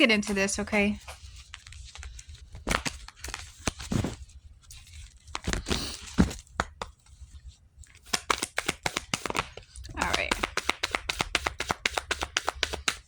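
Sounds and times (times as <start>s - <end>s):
papery rustles of cards: 0.2s - 13.0s
cards snapping: 2.6s - 4.2s, 8.0s - 13.0s.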